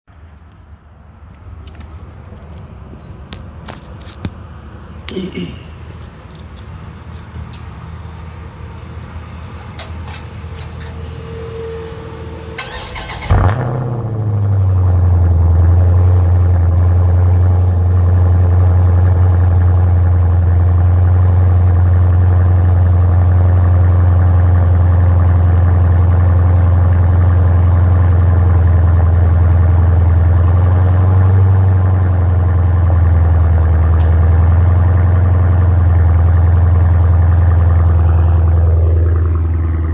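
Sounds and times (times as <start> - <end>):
engine cranking and catching: 9.4 - 11.2, 12.6 - 13.9
loud engine idle drone: 9.5 - 39.9.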